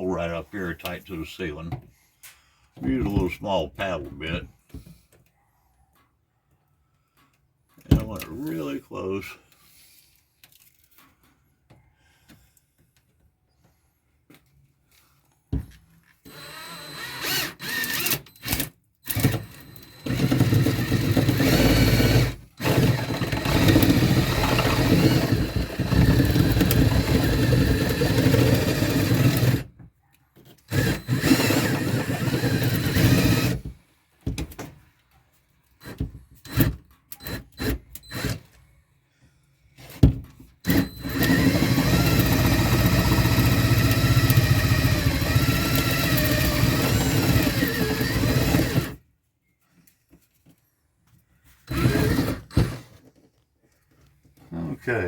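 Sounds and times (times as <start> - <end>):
electric drill boring: 16.3 - 29.6, 30.7 - 33.6, 40.6 - 49.0, 51.7 - 52.8.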